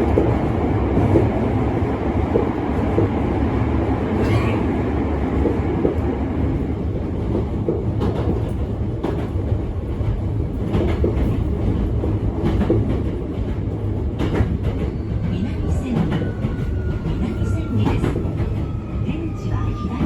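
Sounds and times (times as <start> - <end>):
train wheels rumbling on rail: 0.0 - 20.0
clacks over rail joints: 5.4 - 18.8.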